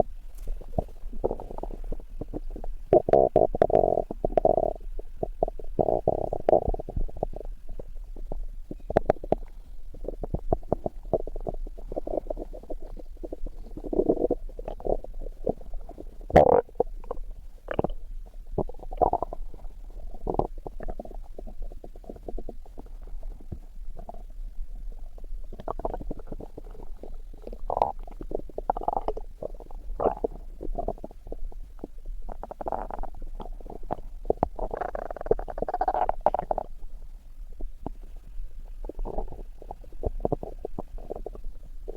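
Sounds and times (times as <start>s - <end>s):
stomach growling: 0.0s - 41.9s.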